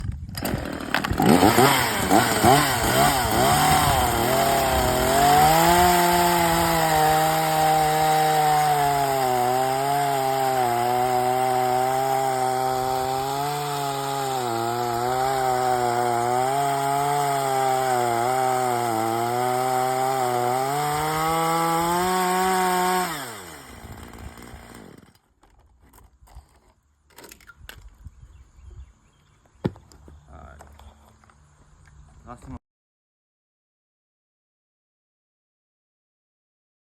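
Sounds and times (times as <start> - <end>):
chainsaw revving and cutting wood: 0.4 - 25.3.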